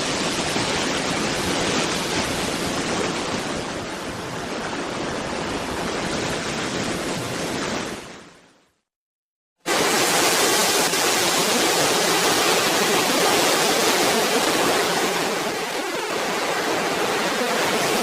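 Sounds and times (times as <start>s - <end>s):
steady rushing noise: 9.7s - 18.0s.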